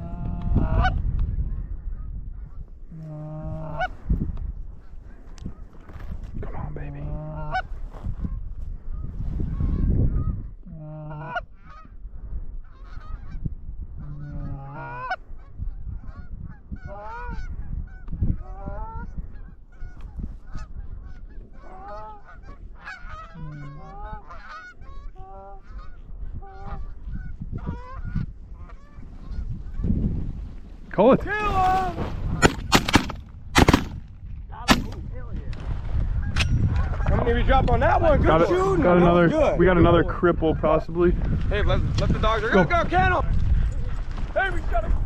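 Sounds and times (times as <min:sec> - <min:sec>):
geese honking and clucking: 0:00.1 - 0:01.0, 0:02.4 - 0:04.0, 0:07.0 - 0:07.7, 0:09.5 - 0:11.9, 0:12.6 - 0:29.9.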